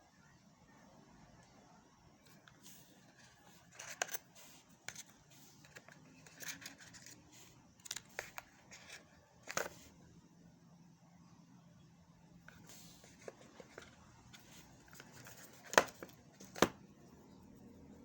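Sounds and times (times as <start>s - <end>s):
packaging clicks and scrapes: 2.6s - 9.9s.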